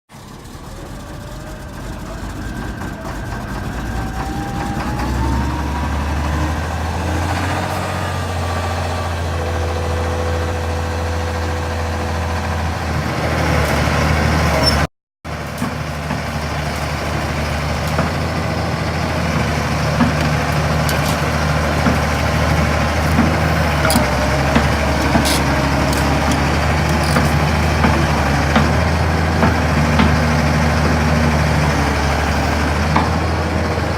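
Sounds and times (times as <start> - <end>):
excavator diesel engine: 0.1 - 33.9
whine rising in pitch: 0.3 - 9.8.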